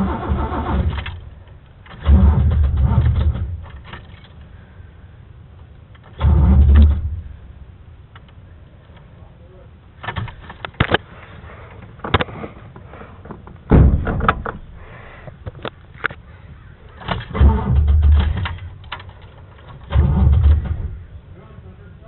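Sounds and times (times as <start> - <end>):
engine cranking on starter: 0.0 - 4.3, 6.0 - 7.4, 16.9 - 21.1
starter clicks: 16.8 - 21.0.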